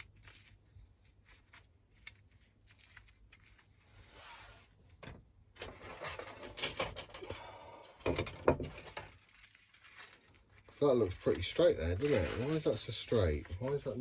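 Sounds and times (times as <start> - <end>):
clicking and rattling: 5.6 - 7.4
small metal clicks and scrapes: 5.6 - 7.4, 8.6 - 14.0.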